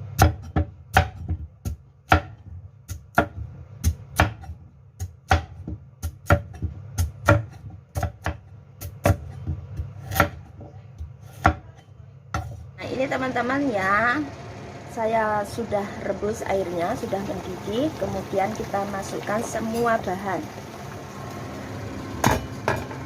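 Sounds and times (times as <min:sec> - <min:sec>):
knife chopping on cutting board: 0:00.2 - 0:12.6.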